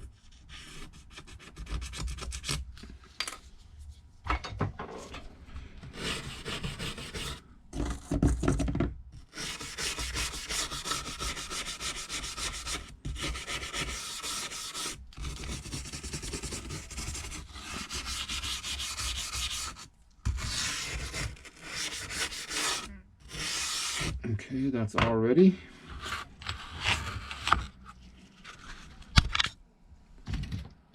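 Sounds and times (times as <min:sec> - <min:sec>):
tool scraping along frame: 0:16.1 - 0:24.2.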